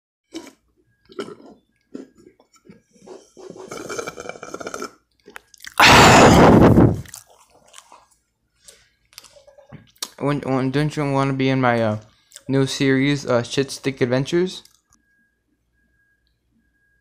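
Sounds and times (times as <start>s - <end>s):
mouth and swallowing noises: 3.5s - 10.2s
loud breathy blast: 5.8s - 7.0s.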